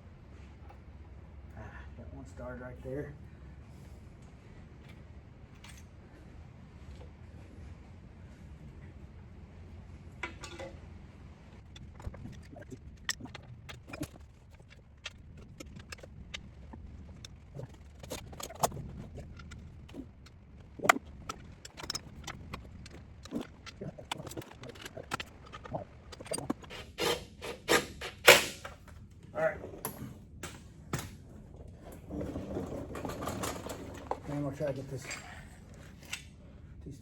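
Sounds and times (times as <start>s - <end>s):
metallic clicks of bolts and tools: 11.7s - 28.8s.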